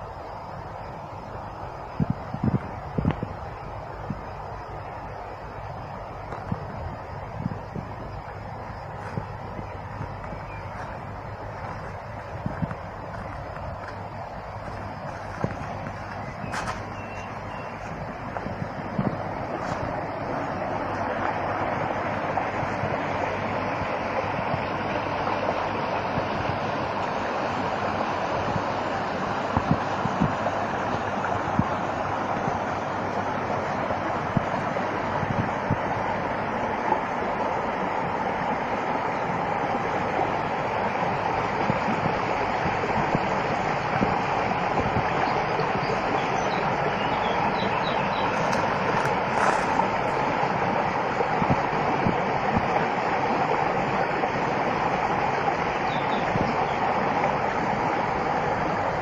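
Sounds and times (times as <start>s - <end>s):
water rushing: 0.0s - 59.0s
faint high bird chirps: 9.6s - 11.1s, 16.0s - 18.0s, 45.2s - 48.6s, 55.9s - 56.8s.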